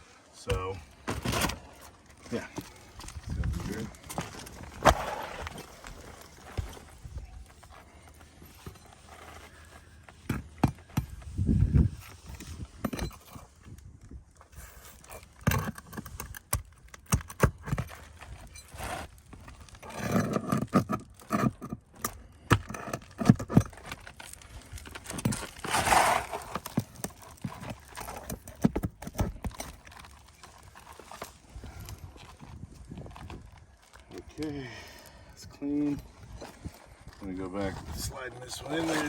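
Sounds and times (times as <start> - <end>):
shingles scraping: 0.6 - 13.6, 14.4 - 32.7, 37.7 - 39.0.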